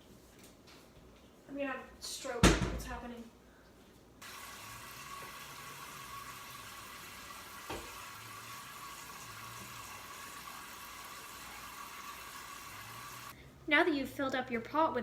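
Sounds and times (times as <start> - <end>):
tap water running into pot: 4.2 - 13.4.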